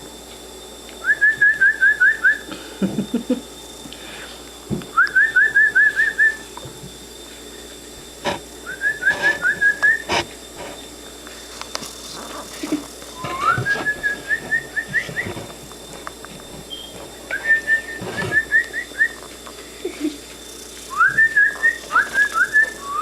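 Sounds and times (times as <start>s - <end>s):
person whistling short rising notes: 8.7s - 10.1s, 13.2s - 15.4s, 16.7s - 19.2s, 20.9s - 23.0s.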